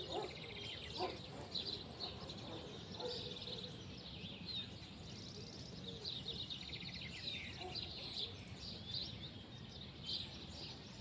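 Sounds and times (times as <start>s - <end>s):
small birds chirping: 0.0s - 4.9s.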